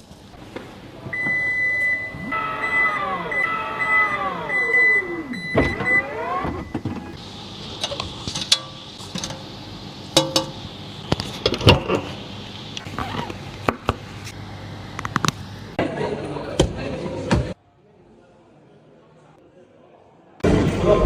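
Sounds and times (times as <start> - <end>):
high beep: 1.2 - 6.8
power window motor whining: 2.1 - 7.2
sharp clicks and knocks: 10.2 - 11.6.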